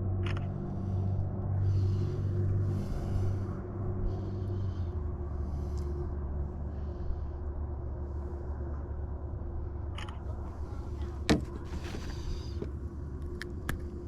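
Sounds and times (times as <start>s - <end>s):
short rustle: 11.3s - 12.6s.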